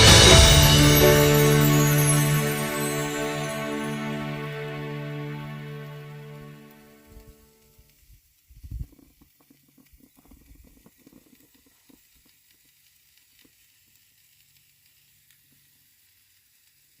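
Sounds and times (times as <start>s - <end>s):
faint crackling and ticking: 6.7s - 17.0s.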